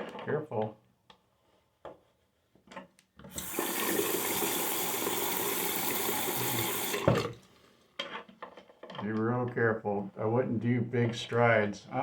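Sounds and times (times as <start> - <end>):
water running into sink: 3.3 - 7.4.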